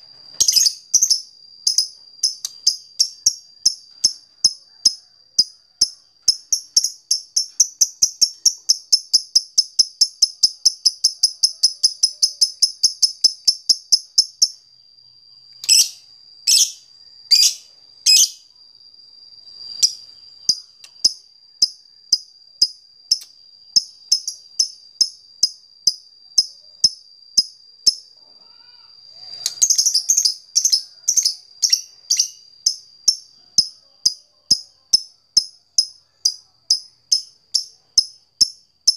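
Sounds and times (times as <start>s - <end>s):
faint steady high tone: 0.0s - 38.9s
lovebird ticking chirps: 0.3s - 14.6s, 15.6s - 18.4s, 29.2s - 38.9s.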